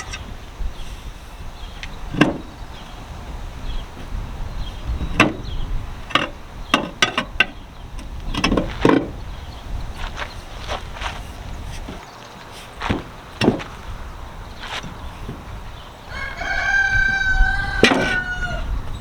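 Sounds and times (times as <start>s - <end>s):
tire tools knocking on steel rim: 5.0s - 9.2s, 12.8s - 13.9s, 17.8s - 18.3s.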